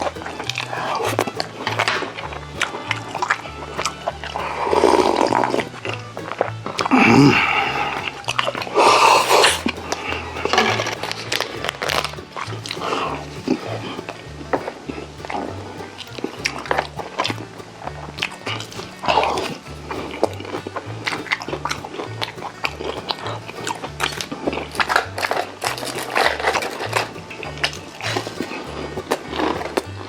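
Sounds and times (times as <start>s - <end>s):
background music with bass line: 0.0s - 30.0s
wet mouth clicks: 6.8s - 11.0s
person chewing and biting food: 8.4s - 9.7s.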